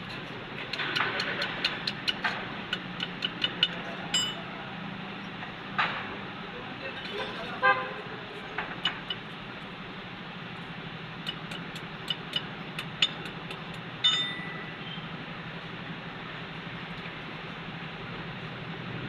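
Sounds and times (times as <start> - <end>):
steady background hum: 0.0 - 18.7
sharp metallic clicks: 0.7 - 4.4, 11.2 - 14.3
ringing metal clink: 3.4 - 4.4, 14.0 - 14.7.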